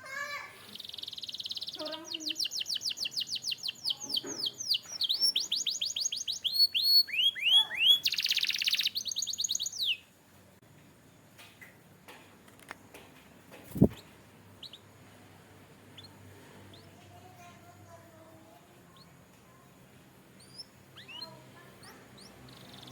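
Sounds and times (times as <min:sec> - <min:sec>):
faint bird chirps: 0:00.2 - 0:10.2, 0:13.7 - 0:15.0, 0:15.9 - 0:19.7, 0:20.3 - 0:22.9
canary singing: 0:00.7 - 0:10.2, 0:13.7 - 0:15.0, 0:15.8 - 0:22.9.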